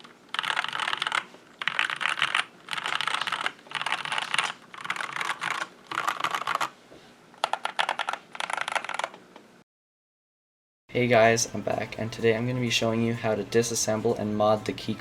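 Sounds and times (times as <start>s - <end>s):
mechanical keyboard typing: 0.0s - 6.7s, 7.4s - 9.2s.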